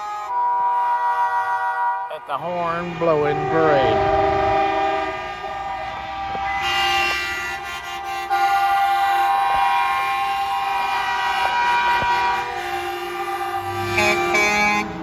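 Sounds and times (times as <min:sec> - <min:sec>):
truck air horns blowing: 0:00.0 - 0:15.0.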